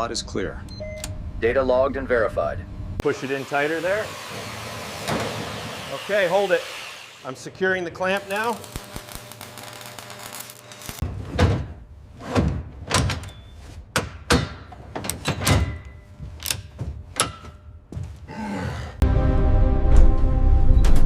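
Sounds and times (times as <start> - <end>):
clamp knocking and clanking: 13.9 - 17.7.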